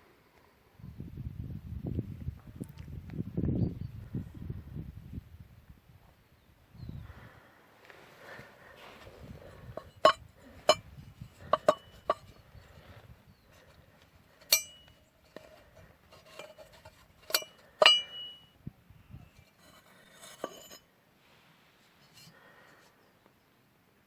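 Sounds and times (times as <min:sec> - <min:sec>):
metal tools clinking: 0:11.4 - 0:12.3, 0:14.4 - 0:18.5, 0:19.4 - 0:20.8.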